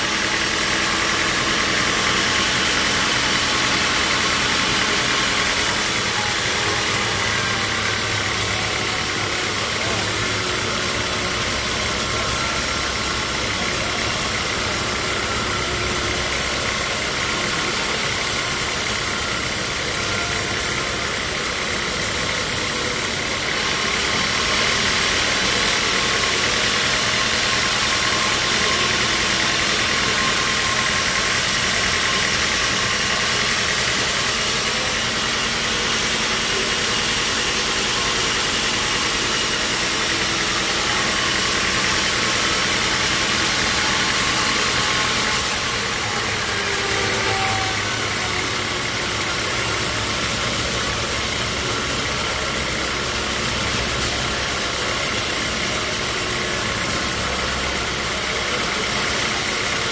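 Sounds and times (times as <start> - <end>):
bandsaw mill humming and hissing: 0.0 - 59.9.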